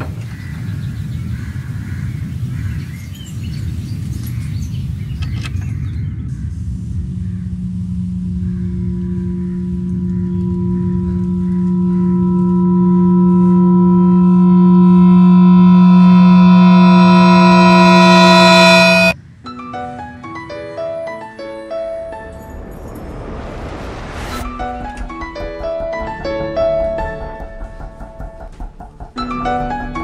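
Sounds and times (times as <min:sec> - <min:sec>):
low rumble: 0:06.0 - 0:19.2
droning suspense riser: 0:06.4 - 0:19.2.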